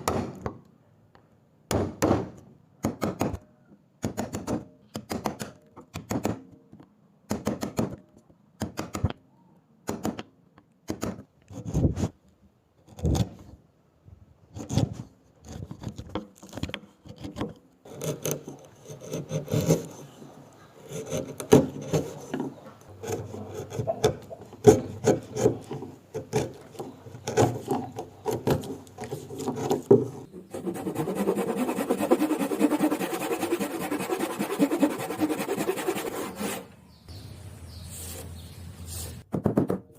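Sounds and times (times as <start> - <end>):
hand tool scraping wood: 17.0 - 36.7.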